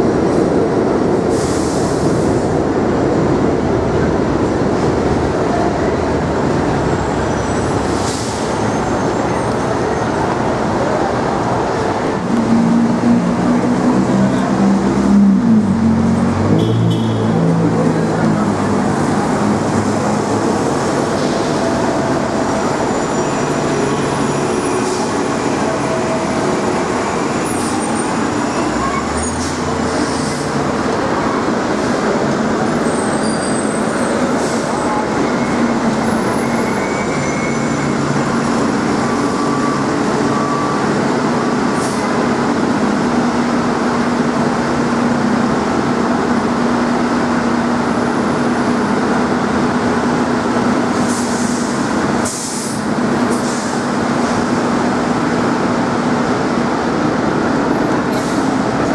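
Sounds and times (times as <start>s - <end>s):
subway train rumbling: 0.0s - 58.9s.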